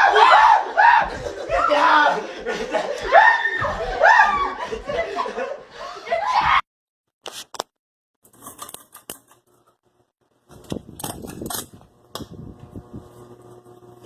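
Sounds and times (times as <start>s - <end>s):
steady mechanical hum: 10.5s - 14.0s.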